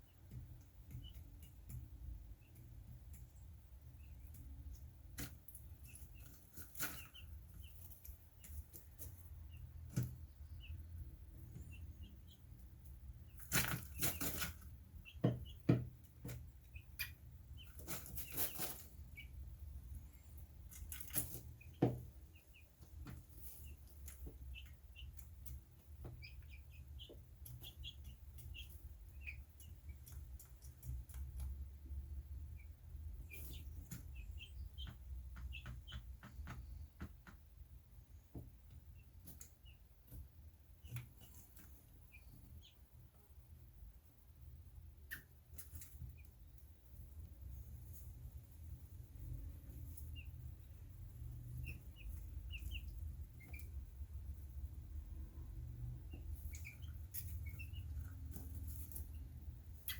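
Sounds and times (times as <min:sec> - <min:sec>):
faint squeaks and clicks: 0:00.0 - 0:43.5, 0:45.0 - 0:59.9.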